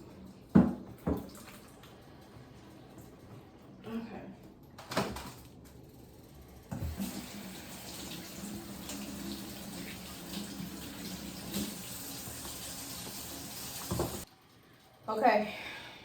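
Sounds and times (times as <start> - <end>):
tap running into sink: 10.3 - 14.2.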